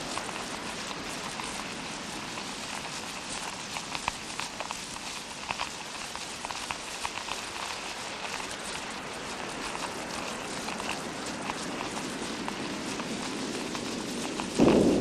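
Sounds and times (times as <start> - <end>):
drop-like ticks: 0.0 - 15.0
imitation rainfall hiss: 0.0 - 15.0.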